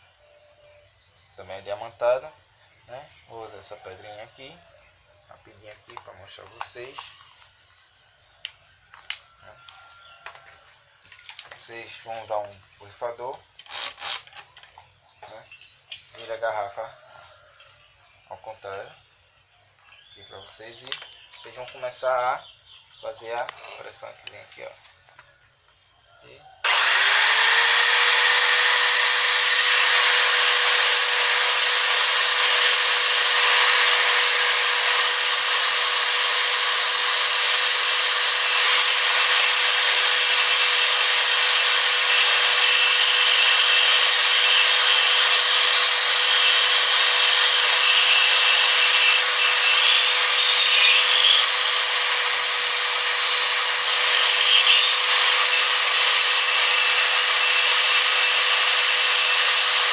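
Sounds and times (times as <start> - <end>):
drill motor whine: 8.9 - 11.2, 26.6 - 59.9.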